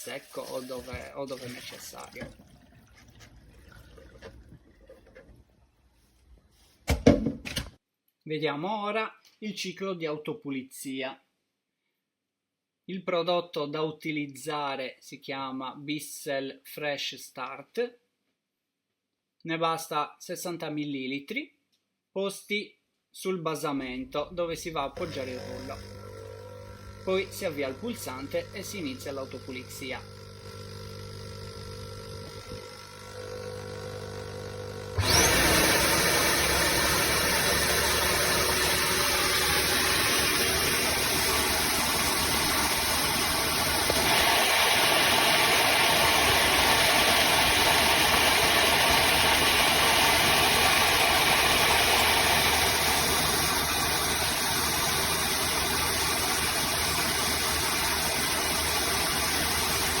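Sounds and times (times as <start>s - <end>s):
vacuum motor running: 24.9s - 60.0s.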